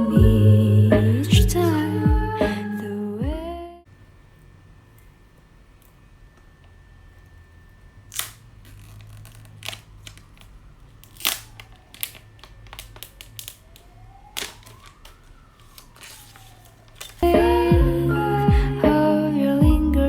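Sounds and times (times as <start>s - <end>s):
packaging clicks and taps: 8.1s - 17.2s
packaging tearing and rustling: 8.1s - 17.3s.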